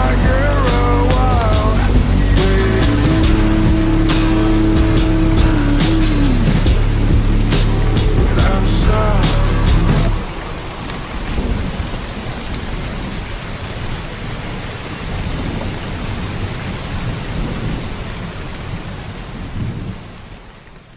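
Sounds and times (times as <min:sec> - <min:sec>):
low rolls of thunder: 0:00.0 - 0:14.0
heavy rain: 0:00.0 - 0:20.9.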